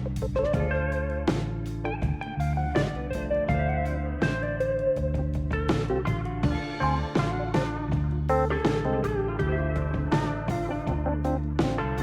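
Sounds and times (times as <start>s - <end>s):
bass line: 0.0s - 12.0s
bluesy guitar: 0.0s - 12.0s.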